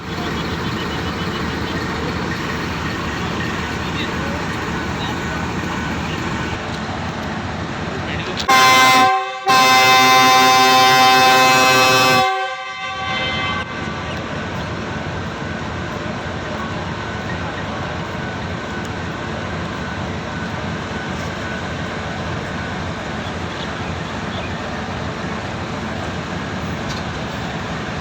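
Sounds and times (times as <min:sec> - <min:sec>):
locomotive air horn blast: 0:08.5 - 0:13.8.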